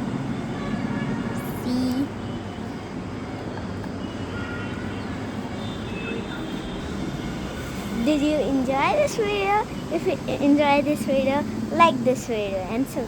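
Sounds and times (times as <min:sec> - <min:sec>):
constant hiss and rumble: 0:06.4 - 0:13.0.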